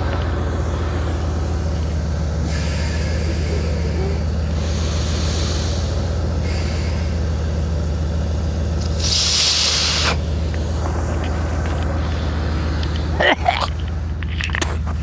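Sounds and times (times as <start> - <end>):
engine idling: 0.0 - 15.0
sharp hiss: 2.4 - 12.5.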